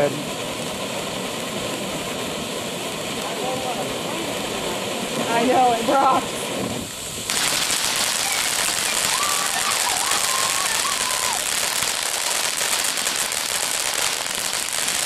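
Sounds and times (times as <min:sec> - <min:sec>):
firework fountain crackling: 0:00.0 - 0:15.0.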